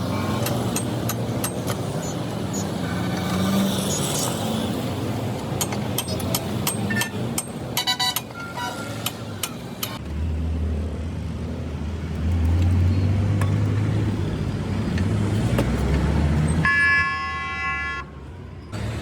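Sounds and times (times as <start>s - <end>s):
vehicle engine rumbling: 0.0s - 16.8s, 18.2s - 19.0s
vehicle horn blast: 16.6s - 18.1s.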